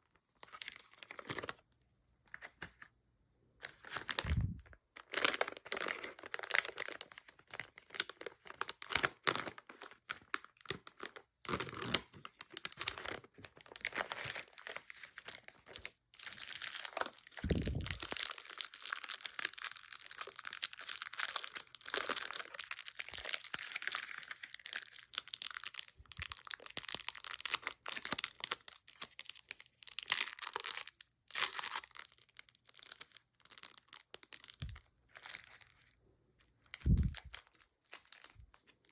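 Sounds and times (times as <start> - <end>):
plastic wrappers crinkling: 3.6 - 38.9.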